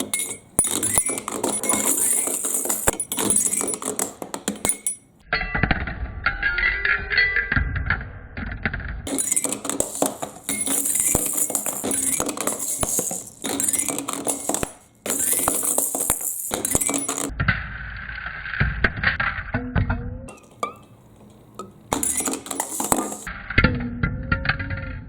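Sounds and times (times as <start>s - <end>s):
marbles clattering down a run: 0.0s - 5.1s, 9.1s - 17.3s, 21.9s - 23.3s.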